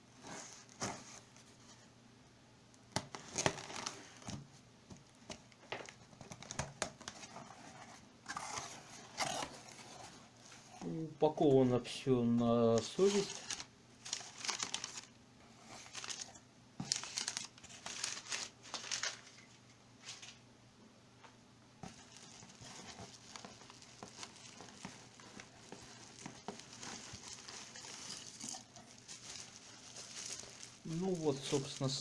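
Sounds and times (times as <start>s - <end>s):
packing material crinkling and tearing: 3.1s - 4.4s, 12.7s - 20.4s, 21.8s - 32.0s.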